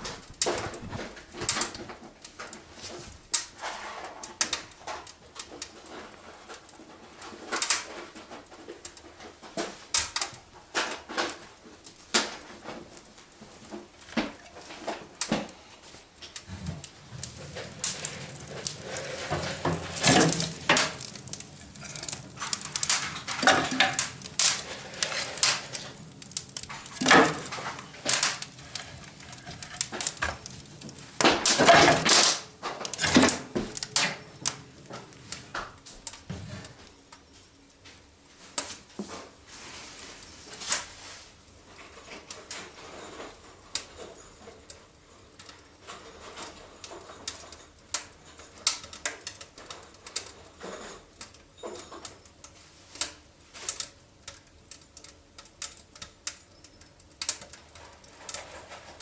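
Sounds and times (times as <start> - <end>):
hard objects clattering: 16.2 - 36.8.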